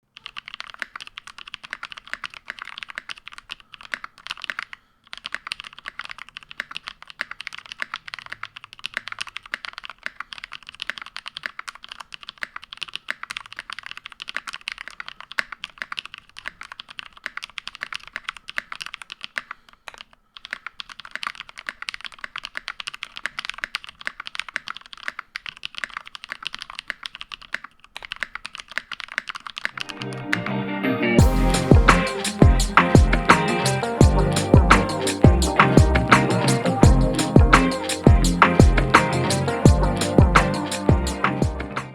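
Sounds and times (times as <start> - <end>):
mechanical keyboard typing: 0.1 - 30.0, 32.0 - 41.9.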